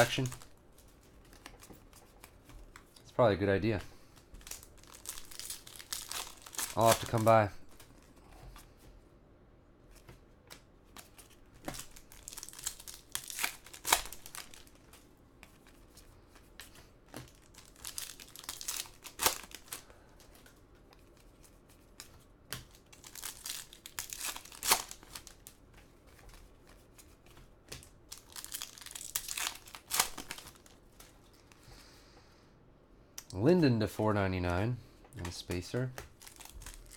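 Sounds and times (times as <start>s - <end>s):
foil wrappers crinkling and tearing: 0.0s - 2.3s, 3.6s - 8.1s, 11.2s - 20.4s, 21.1s - 25.6s, 27.7s - 31.5s, 35.2s - 36.9s.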